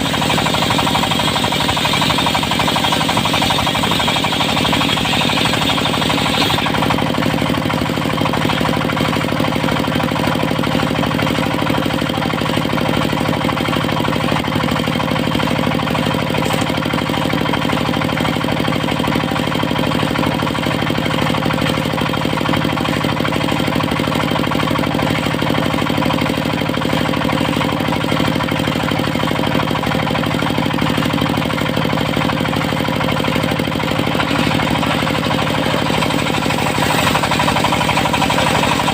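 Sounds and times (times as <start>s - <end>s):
saw blade whine: 0.0s - 8.8s, 33.3s - 38.9s
diesel engine knocking: 0.0s - 38.9s.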